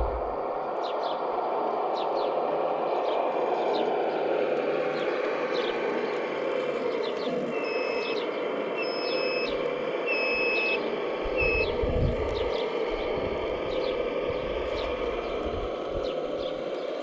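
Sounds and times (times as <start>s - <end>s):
model construction machine whirring: 1.8s - 17.0s
bird chirps: 6.9s - 12.8s.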